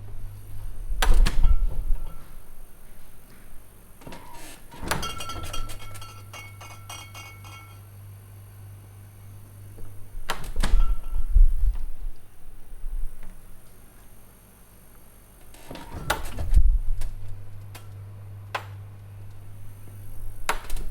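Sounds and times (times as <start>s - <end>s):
refrigerator hum: 0.0s - 20.9s
refrigerator door clack: 1.0s - 2.4s, 4.0s - 7.8s, 10.3s - 11.4s.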